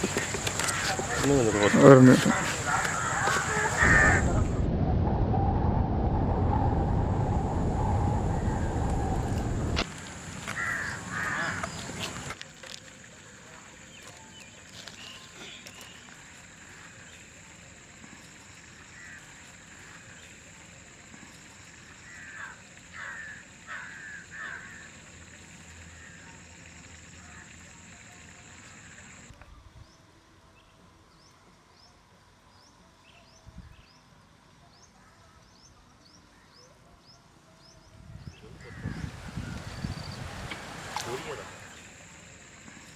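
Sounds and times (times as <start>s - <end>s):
bird calling: 0.0s - 4.6s, 8.2s - 12.4s, 38.4s - 42.9s
steady high whine: 0.0s - 12.4s
low rumbling noise: 2.3s - 12.2s.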